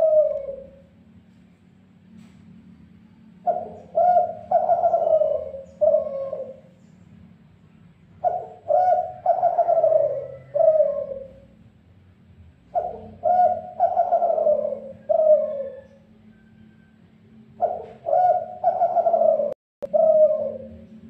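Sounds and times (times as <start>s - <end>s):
dove cooing: 0.0s - 1.0s, 3.4s - 6.8s, 8.2s - 11.7s, 12.7s - 16.7s, 17.5s - 21.0s.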